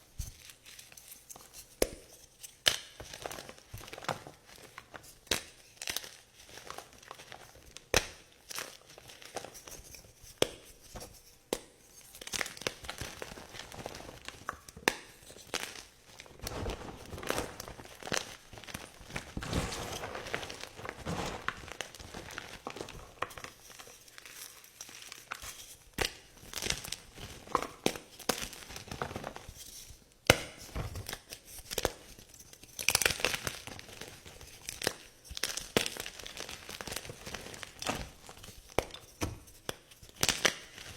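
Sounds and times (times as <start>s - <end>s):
chalk crunching and crumbling: 12.1s - 26.8s.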